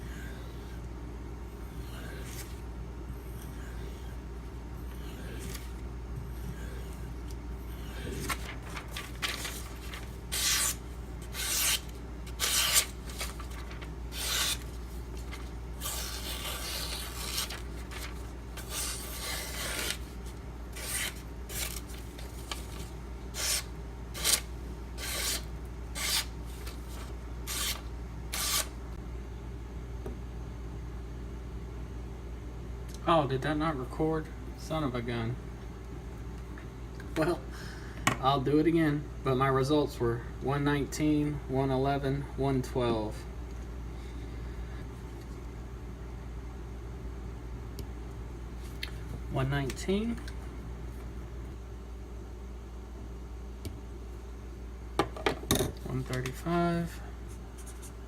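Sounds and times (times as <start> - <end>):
knife stroked along strop: 9.2 - 13.4, 26.0 - 26.3, 27.5 - 28.7.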